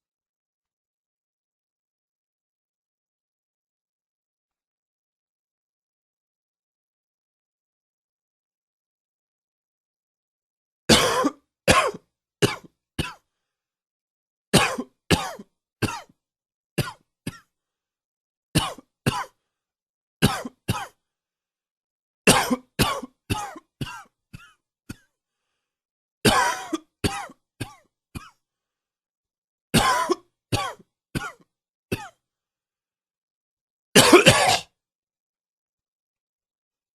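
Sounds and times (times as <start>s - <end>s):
man coughing: 10.9s - 13.2s, 14.6s - 16.1s, 20.2s - 21.0s, 22.3s - 25.1s, 26.3s - 28.4s, 29.8s - 32.2s, 34.0s - 34.8s.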